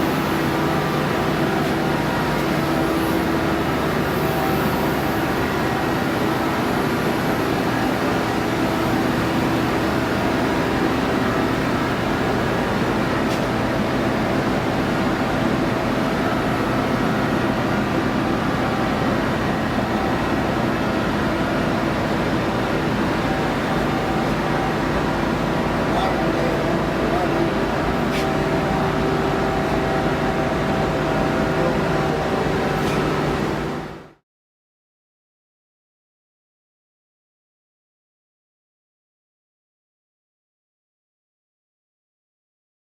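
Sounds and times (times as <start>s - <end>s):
lathe humming and whining: 0.0s - 34.2s.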